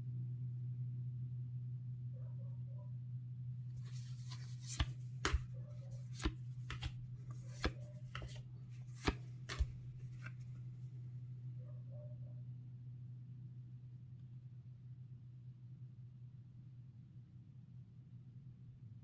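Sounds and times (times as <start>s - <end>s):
cards tapping and clicking: 3.8s - 10.6s.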